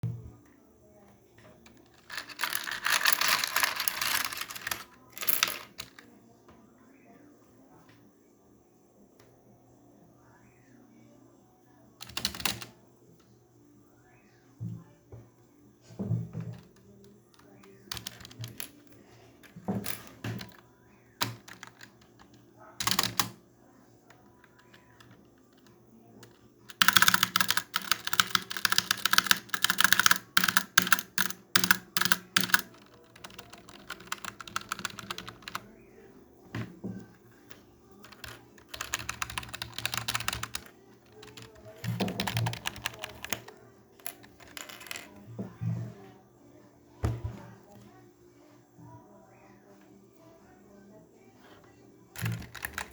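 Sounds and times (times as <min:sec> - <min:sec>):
typing on a membrane keyboard: 0:01.9 - 0:06.0, 0:12.0 - 0:12.7, 0:16.4 - 0:18.8, 0:21.2 - 0:23.4, 0:24.3 - 0:35.7, 0:38.0 - 0:45.2, 0:52.2 - 0:52.9.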